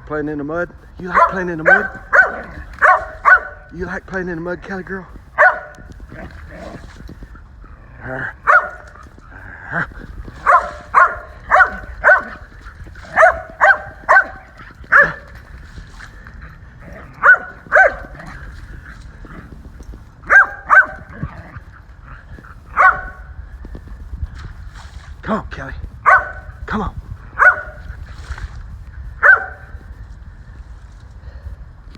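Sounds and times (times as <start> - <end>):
dog barking: 1.0 - 3.8, 5.3 - 6.8, 8.2 - 9.1, 10.3 - 15.4, 16.8 - 18.5, 20.2 - 21.3, 22.6 - 23.4, 26.0 - 26.6, 27.3 - 27.9, 29.2 - 29.8.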